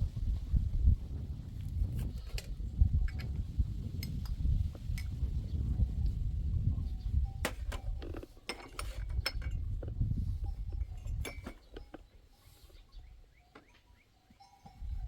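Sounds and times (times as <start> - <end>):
light metallic clinks and knocks: 2.3 - 5.2, 7.2 - 15.0.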